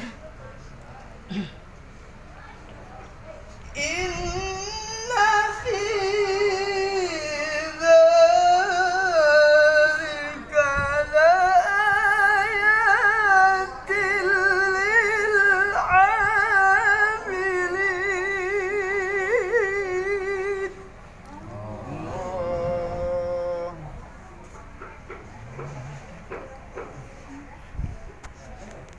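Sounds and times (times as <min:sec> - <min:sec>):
person chanting recitation: 0:03.7 - 0:26.5.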